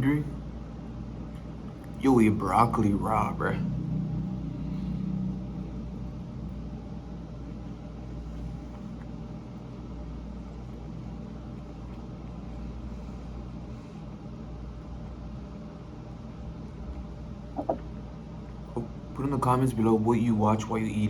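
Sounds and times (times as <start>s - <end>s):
low mechanical hum: 0.0s - 21.0s.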